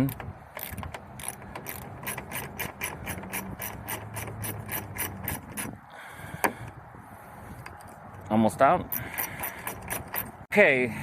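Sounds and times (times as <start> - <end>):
ratchet tool clicking: 0.0 - 5.8, 8.9 - 10.4.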